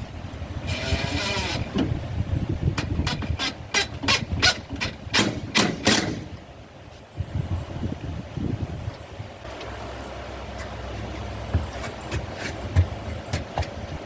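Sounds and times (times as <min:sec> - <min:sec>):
power tool whirring: 0:00.6 - 0:02.1, 0:02.8 - 0:06.3
sharp knocks on metal: 0:04.8 - 0:06.4.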